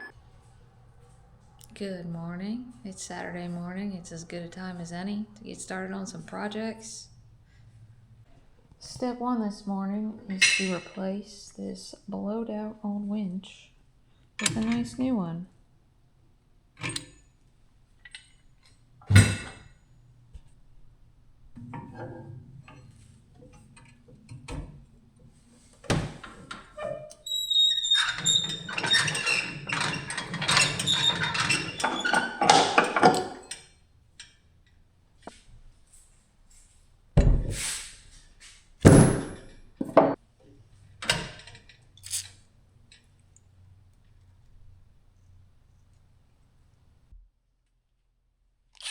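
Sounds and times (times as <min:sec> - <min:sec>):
metallic clattering and scraping: 0:21.5 - 0:33.7
metal knocks and thunks: 0:37.2 - 0:37.6, 0:38.8 - 0:40.2.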